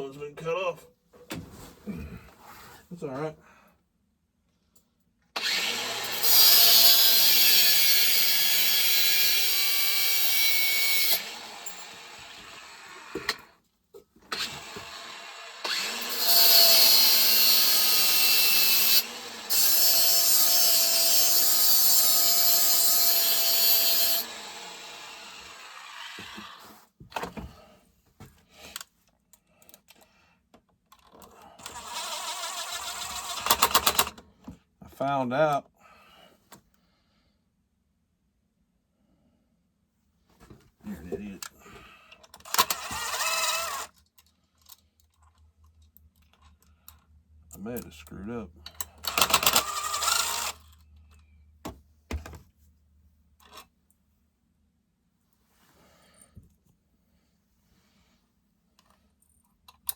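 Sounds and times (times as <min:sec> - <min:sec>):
power tool grinding metal: 0:05.4 - 0:13.4, 0:14.3 - 0:26.7, 0:31.6 - 0:34.1, 0:42.5 - 0:43.9, 0:49.0 - 0:50.6.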